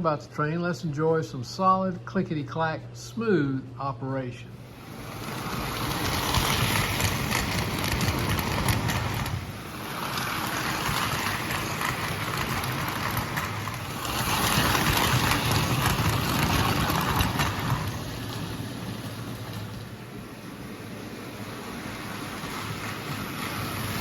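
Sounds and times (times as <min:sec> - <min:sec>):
model train wheels clickety-clack: 0:04.8 - 0:20.1, 0:21.3 - 0:24.0.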